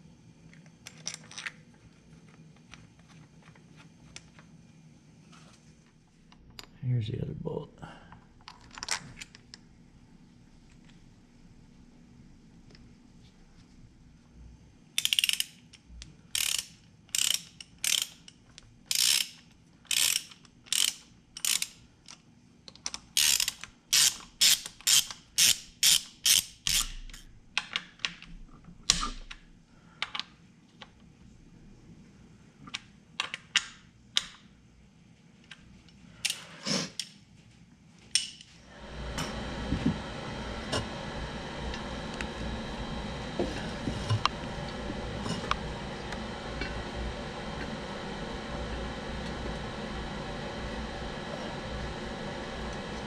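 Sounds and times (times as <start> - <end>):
ratchet wrench clicking: 15.0 - 21.8, 23.2 - 27.2.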